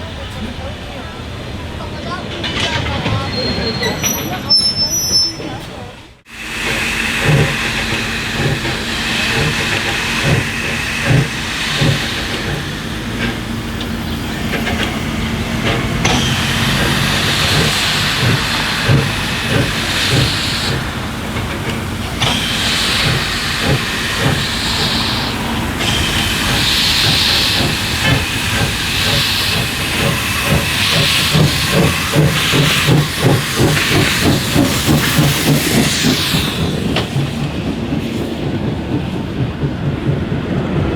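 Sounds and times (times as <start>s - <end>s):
steam locomotive exhaust chuffing: 0.0s - 40.9s
hissing steam bursts: 6.2s - 38.6s.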